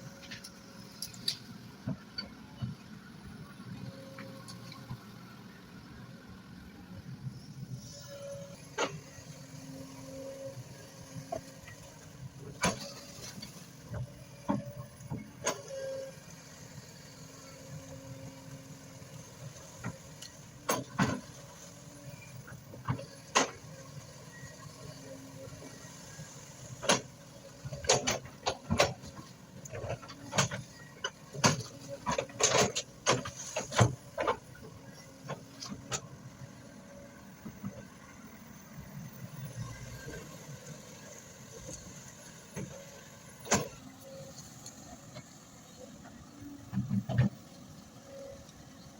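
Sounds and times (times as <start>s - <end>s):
distant excavator engine running: 0.0s - 48.9s.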